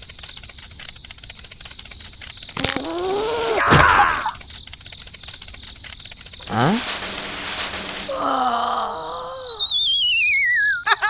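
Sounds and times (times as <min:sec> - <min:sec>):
wavering groan-like voice: 0:08.2 - 0:09.4.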